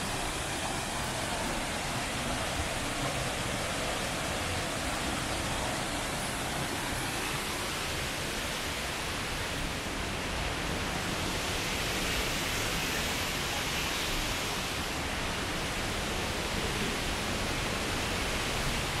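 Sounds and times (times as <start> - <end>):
flowing and falling water: 0.0 - 19.0.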